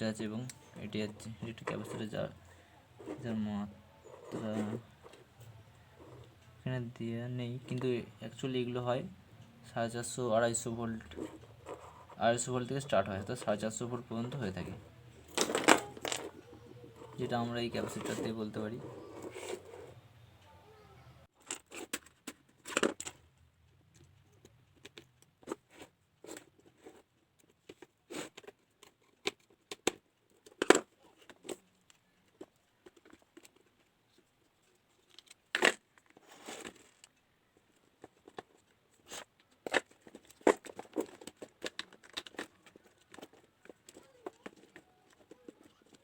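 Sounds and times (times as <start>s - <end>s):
small parts and tools clicking: 15.1s - 20.0s, 21.3s - 46.0s.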